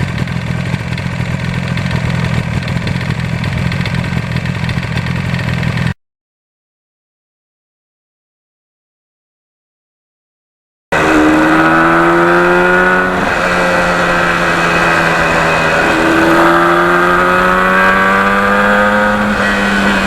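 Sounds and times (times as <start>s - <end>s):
motorcycle engine accelerating: 0.0s - 6.0s, 10.9s - 20.0s.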